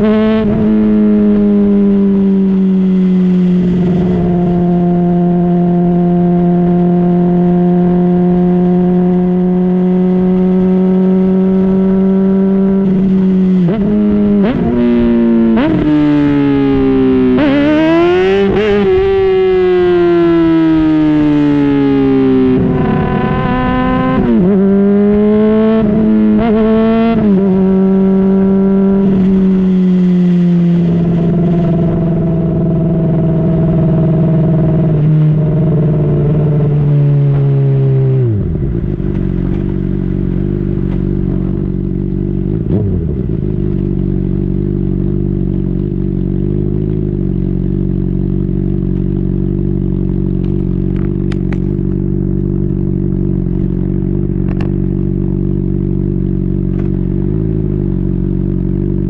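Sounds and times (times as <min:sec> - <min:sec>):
motorcycle engine revving: 0:00.0 - 0:59.0
motorcycle engine idling: 0:38.4 - 0:59.0.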